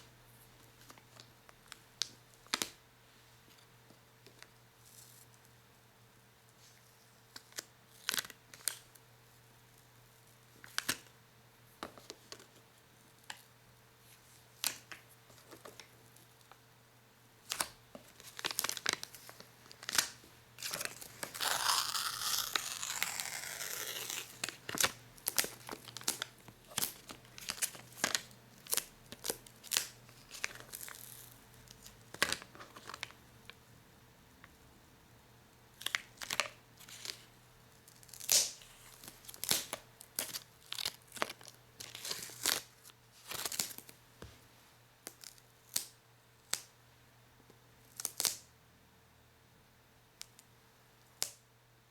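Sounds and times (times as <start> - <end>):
sticky material peeling off: 21.2 - 25.5.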